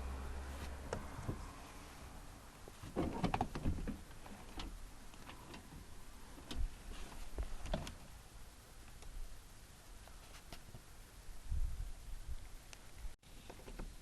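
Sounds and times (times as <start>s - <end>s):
car door parts clicking and clunking: 2.8s - 5.8s, 6.4s - 6.7s.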